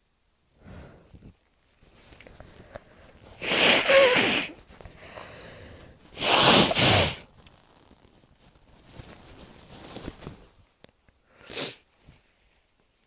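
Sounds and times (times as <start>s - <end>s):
faint breathing: 0.6s - 1.2s, 2.4s - 7.2s
person sneezing: 3.4s - 4.6s, 6.2s - 7.2s, 11.4s - 11.8s.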